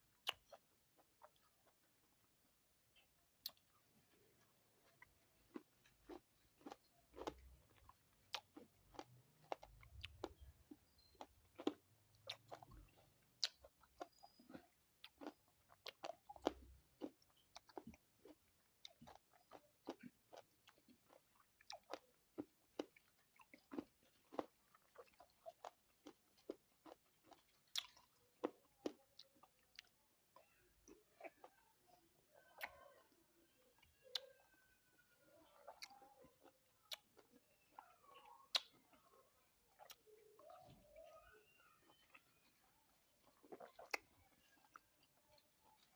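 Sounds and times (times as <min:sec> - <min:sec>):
person chewing crunchy fruit: 0:00.0 - 0:31.6, 0:35.5 - 0:40.8, 0:41.8 - 0:45.9.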